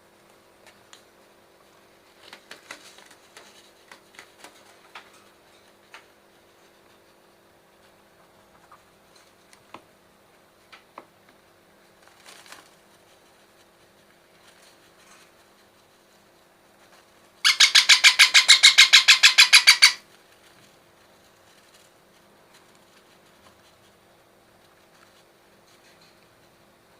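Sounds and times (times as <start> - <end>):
baby parrot harsh call: 17.4 - 20.0.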